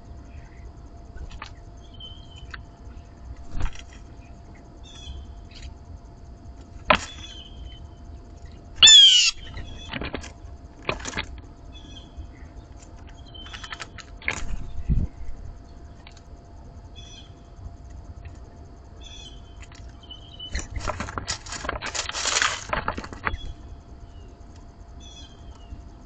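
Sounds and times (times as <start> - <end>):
faint high bird chirps: 1.8 - 2.6, 4.2 - 5.7, 8.8 - 10.0, 13.2 - 13.8, 16.9 - 17.5, 19.0 - 20.6, 25.0 - 25.8
bird wings fluttering: 3.4 - 4.1, 20.5 - 23.5
loud harsh bird call: 8.8 - 9.8.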